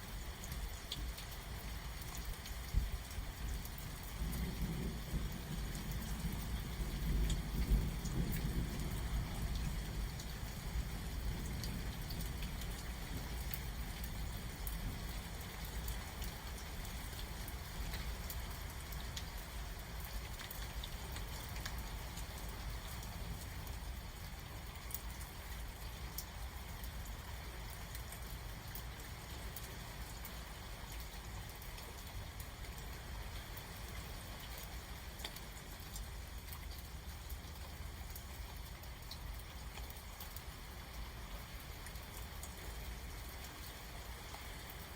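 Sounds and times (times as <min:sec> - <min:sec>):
raindrops ticking close by: 0:00.0 - 0:44.9
steady rain falling: 0:00.0 - 0:44.9
low thunder rumble: 0:03.9 - 0:13.5.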